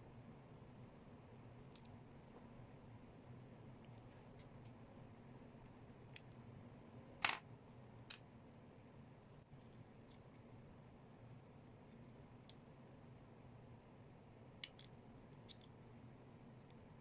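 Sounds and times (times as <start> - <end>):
faint steady hum: 0.0 - 17.0
light sharp clicks and taps: 14.6 - 15.8.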